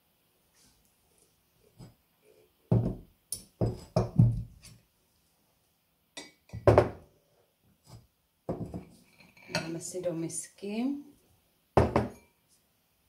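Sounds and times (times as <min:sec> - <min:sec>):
bowls and utensils set down on counter: 0:06.5 - 0:07.0, 0:08.5 - 0:09.7, 0:11.8 - 0:12.3.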